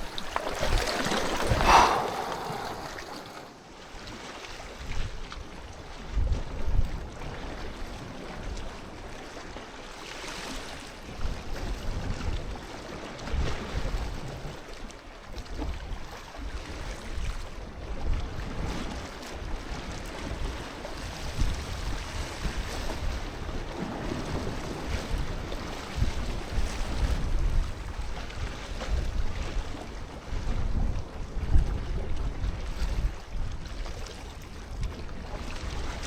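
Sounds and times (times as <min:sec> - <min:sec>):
wind buffeting microphone: 0:00.0 - 0:03.7
sea waves washing in: 0:00.0 - 0:03.9.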